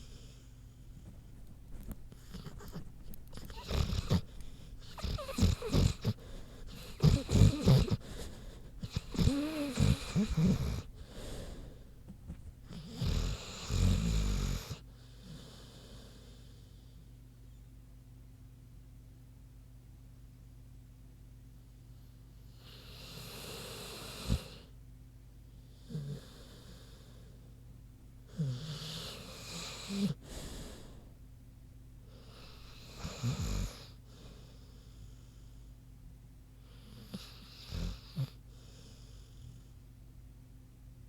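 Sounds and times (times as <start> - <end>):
dog snoring: 0.0 - 11.8, 12.6 - 16.6, 22.5 - 24.7, 25.7 - 27.4, 28.3 - 31.1, 32.1 - 35.5, 36.6 - 39.7.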